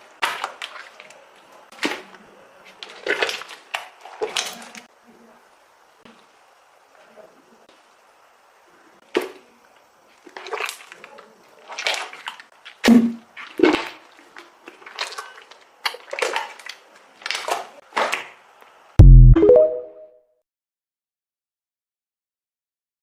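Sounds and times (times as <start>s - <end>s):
slime squelching: 0.0s - 4.9s, 10.1s - 18.4s.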